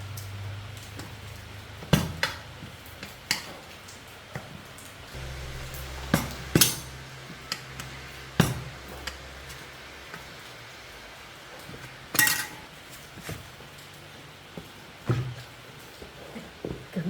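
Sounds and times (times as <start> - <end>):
low hum: 5.0 - 12.2.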